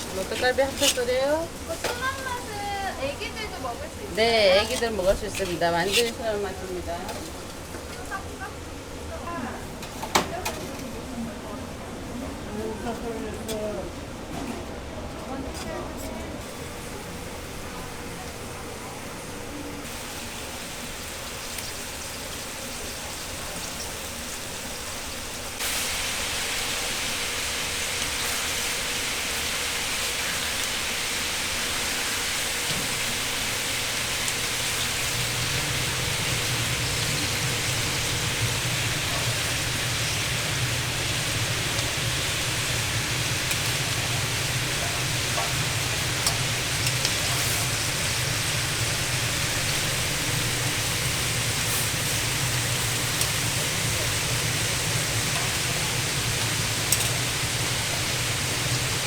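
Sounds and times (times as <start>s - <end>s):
meat patties sizzling on grill: 0.0s - 8.4s, 16.4s - 59.0s.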